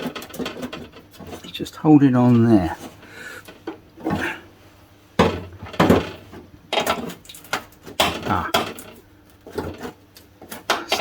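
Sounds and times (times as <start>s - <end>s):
pry tool knocking and scraping metal: 6.7s - 11.0s.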